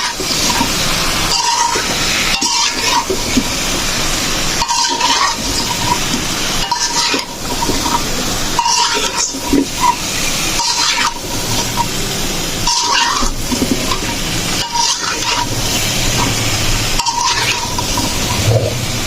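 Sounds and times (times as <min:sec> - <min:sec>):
cooking hissing on a stove: 0:00.0 - 0:19.0.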